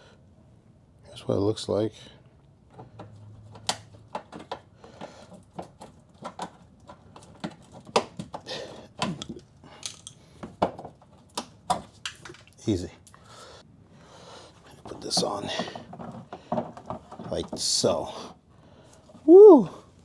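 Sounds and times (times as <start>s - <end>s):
plastic parts clicking and knocking: 2.7s - 12.6s, 14.8s - 17.9s.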